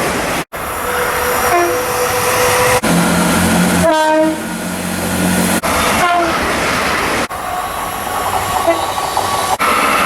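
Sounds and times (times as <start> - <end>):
train engine humming: 0.5 - 10.0
train horn: 0.9 - 6.4.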